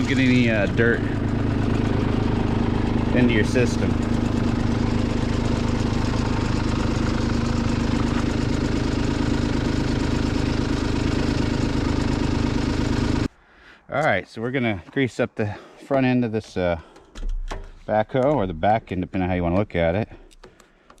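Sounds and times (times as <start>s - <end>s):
tractor diesel engine running: 0.0s - 13.4s.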